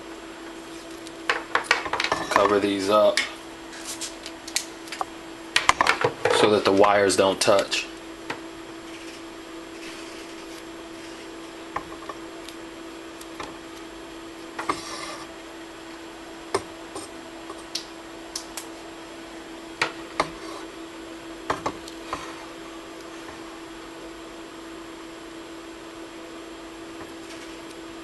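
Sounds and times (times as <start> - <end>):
steady low hum: 0.0 - 28.0
electrical tape handling clicks: 17.6 - 18.7.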